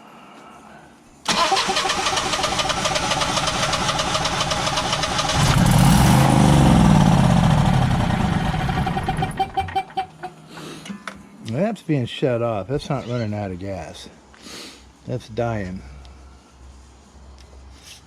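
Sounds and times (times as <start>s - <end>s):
generator engine cranking and running: 1.2s - 10.2s.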